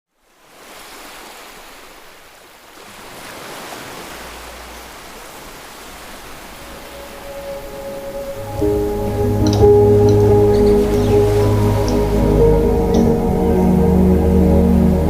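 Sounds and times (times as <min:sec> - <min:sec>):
rushing ambient noise: 0:04.0 - 0:15.0
low hum: 0:06.4 - 0:15.0.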